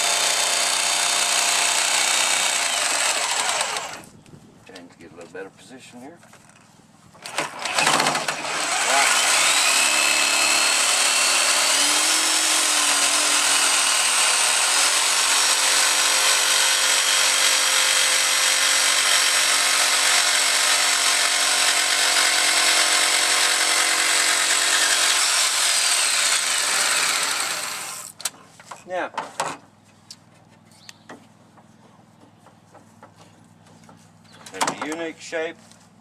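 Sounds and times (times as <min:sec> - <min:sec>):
jigsaw cutting wood: 0:00.0 - 0:04.1, 0:07.2 - 0:28.1.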